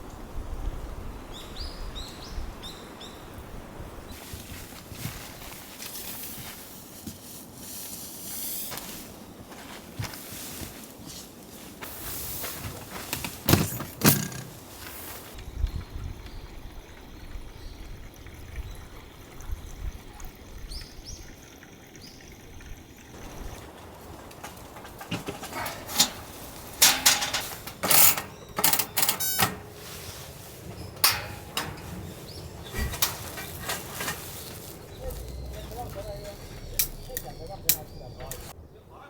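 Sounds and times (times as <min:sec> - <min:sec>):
low wind rumble: 0:00.0 - 0:05.6, 0:13.7 - 0:21.4, 0:22.4 - 0:39.0
camping gear being handled: 0:04.1 - 0:15.4, 0:23.2 - 0:38.6
quick rattling: 0:13.2 - 0:15.4, 0:23.2 - 0:38.5.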